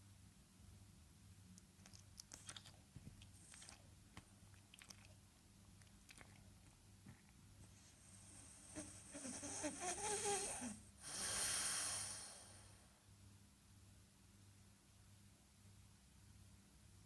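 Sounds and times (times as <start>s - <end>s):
dog chewing and smacking: 1.6s - 7.3s.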